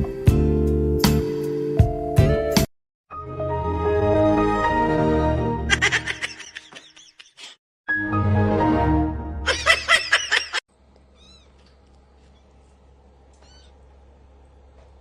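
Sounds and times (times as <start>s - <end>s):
quiet steady hum: 10.7s - 15.0s
cat meowing: 11.1s - 11.7s, 13.3s - 13.8s.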